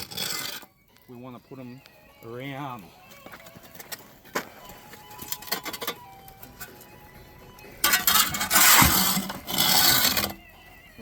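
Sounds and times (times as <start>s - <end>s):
rough scraping of coals: 0.0s - 0.8s, 7.8s - 10.4s.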